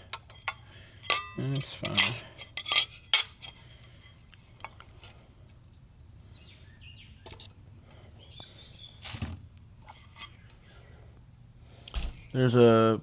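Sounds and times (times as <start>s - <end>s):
low background hum: 0.0s - 13.0s.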